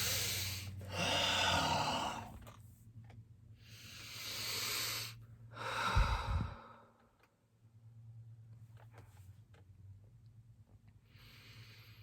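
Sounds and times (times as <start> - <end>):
person breathing heavily: 0.0 - 2.4, 3.7 - 7.0.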